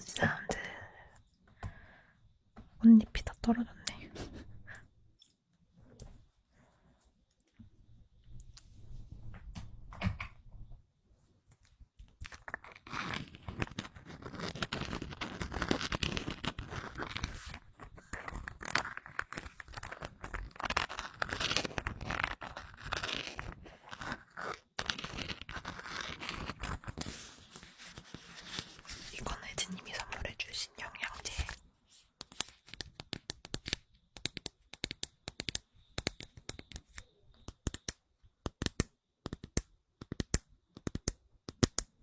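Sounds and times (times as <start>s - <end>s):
packaging wrap crinkling and tearing: 12.2s - 29.1s.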